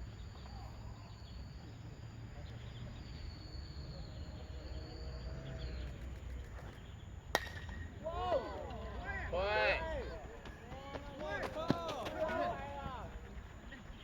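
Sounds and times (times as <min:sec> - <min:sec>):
faint high whine: 0:00.0 - 0:10.3
distant voices: 0:00.0 - 0:14.0
baseball bat crack: 0:05.9 - 0:09.2.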